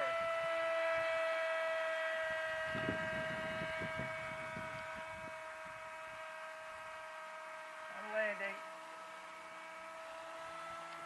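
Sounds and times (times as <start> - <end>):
model airplane motor droning: 0.0 - 11.0
low fluttering noise: 2.4 - 6.3.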